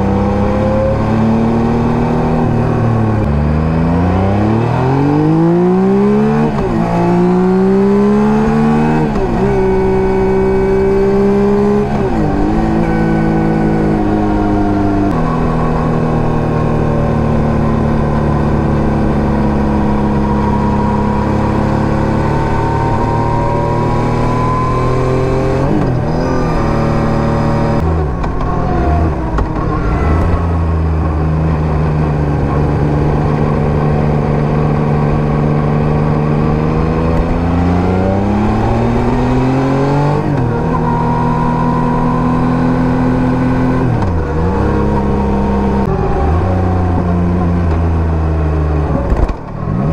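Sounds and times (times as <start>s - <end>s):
motorcycle engine revving: 0.0s - 49.9s.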